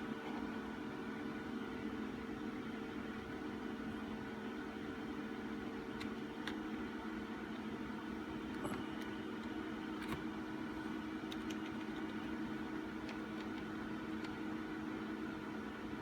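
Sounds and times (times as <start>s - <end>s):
cooling fans humming: 0.0s - 16.0s.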